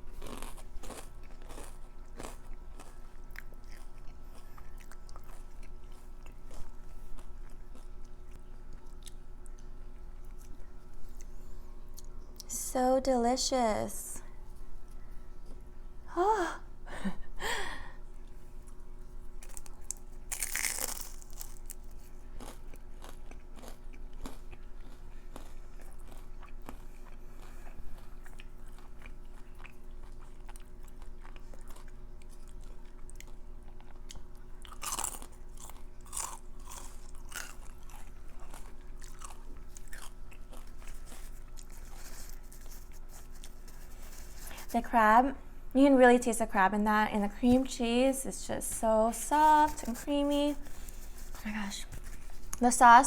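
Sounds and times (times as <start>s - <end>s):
crunching and chewing food: 0.0s - 12.5s, 14.3s - 15.9s, 17.8s - 44.9s, 49.2s - 53.0s.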